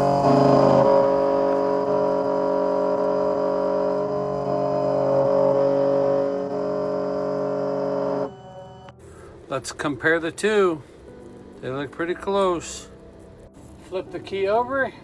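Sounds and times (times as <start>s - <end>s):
key-cutting machine whirring: 0.0s - 9.3s.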